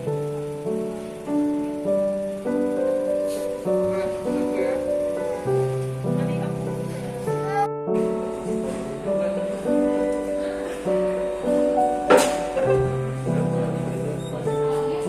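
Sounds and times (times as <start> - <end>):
soft instrumental music: 0.0 - 15.0.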